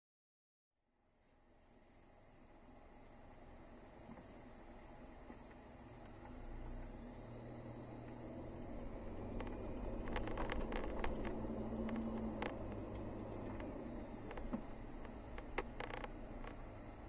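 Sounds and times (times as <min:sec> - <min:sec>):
vehicle engine drone: 0:01.0 - 0:17.0
road noise: 0:01.2 - 0:17.0
sharp clicks and knocks: 0:09.3 - 0:16.6.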